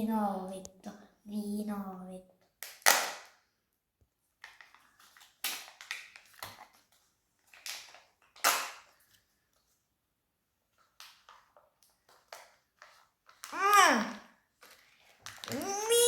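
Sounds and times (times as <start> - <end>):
foil wrapper crinkling: 4.4 - 9.2.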